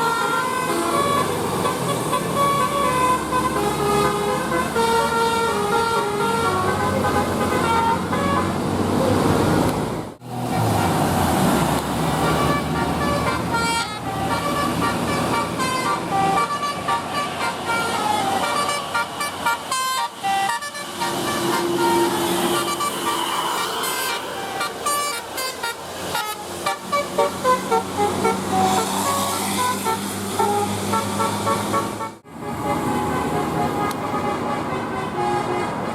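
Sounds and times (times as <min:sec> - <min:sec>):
multi-tone bus horns: 0:00.0 - 0:09.7, 0:10.4 - 0:35.9
bus engines: 0:00.0 - 0:35.9
traffic: 0:00.0 - 0:35.9.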